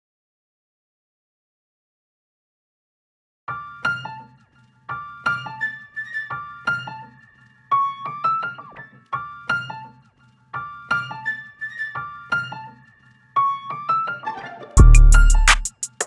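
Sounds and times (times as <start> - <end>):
soft low bass: 14.8 - 15.6.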